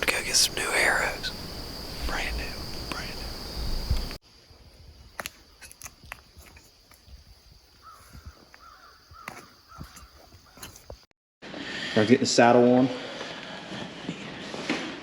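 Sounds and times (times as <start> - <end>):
wind noise on microphone: 1.2 - 5.1
crows cawing: 7.8 - 10.7.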